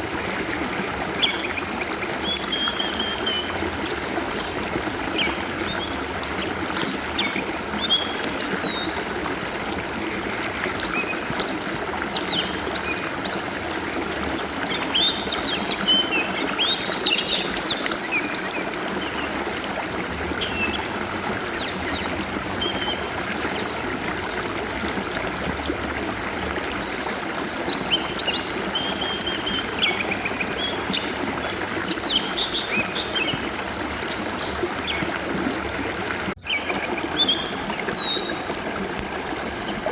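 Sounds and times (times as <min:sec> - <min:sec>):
stream water flowing: 0:00.0 - 0:39.9
bird whistling and chirping: 0:01.2 - 0:01.6, 0:02.2 - 0:09.0, 0:36.4 - 0:39.9.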